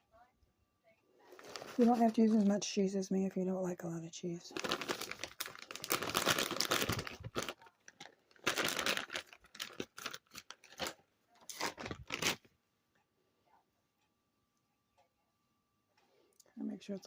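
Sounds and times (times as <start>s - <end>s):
packaging crinkling and tearing: 1.3s - 2.6s, 4.5s - 12.5s.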